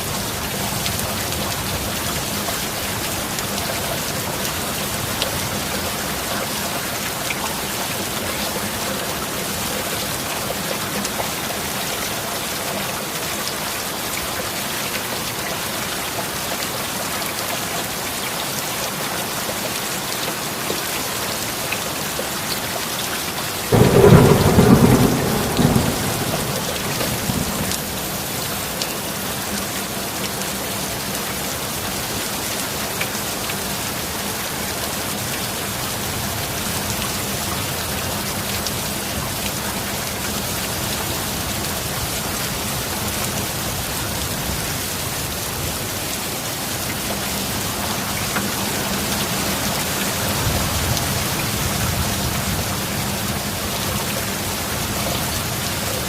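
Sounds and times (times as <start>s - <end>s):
heavy rain: 0.0s - 56.0s
thunderclap rumbling: 23.7s - 28.0s.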